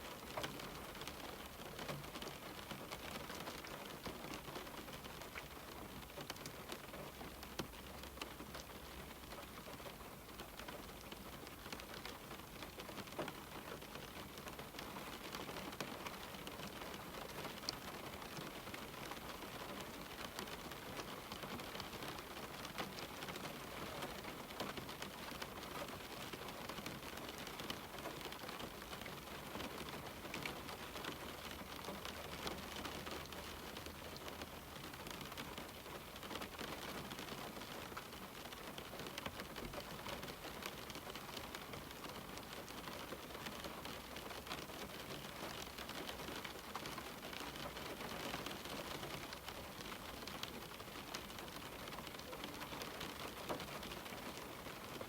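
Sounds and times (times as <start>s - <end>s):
rain on a window: 0.0s - 55.0s.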